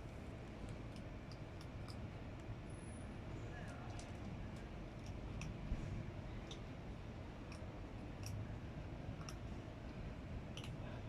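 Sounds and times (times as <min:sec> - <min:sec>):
low steady rumble: 0:00.0 - 0:11.0
cat crunching dry food: 0:10.5 - 0:10.8.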